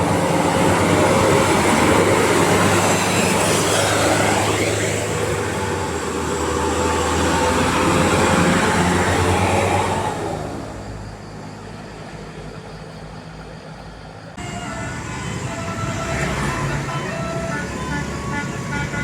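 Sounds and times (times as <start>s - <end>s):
bus diesel engine passing: 0.0s - 19.0s
vehicle approaching: 0.0s - 19.0s
multi-tone horn notes: 14.4s - 19.0s.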